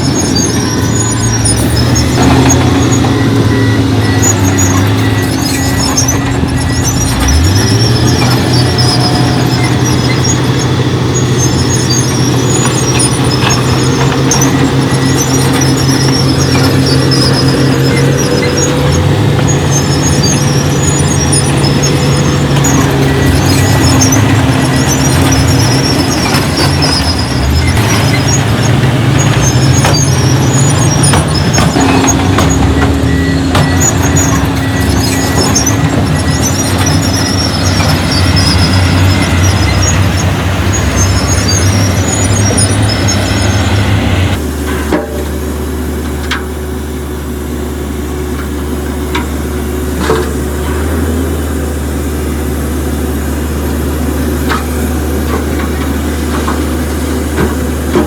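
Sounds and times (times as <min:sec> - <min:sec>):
high squeaking: 0:00.0 - 0:44.4
engine idling: 0:00.0 - 0:58.0
heavy diesel machinery running: 0:00.0 - 0:58.0.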